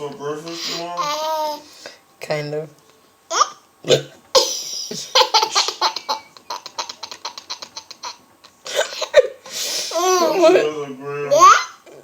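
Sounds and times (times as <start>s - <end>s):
baby laughing: 4.4s - 9.3s.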